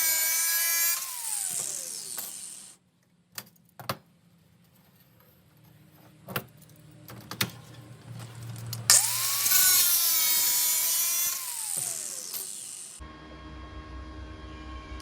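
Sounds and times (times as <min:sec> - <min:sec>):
power tool whining: 0:00.0 - 0:02.8, 0:08.9 - 0:13.0.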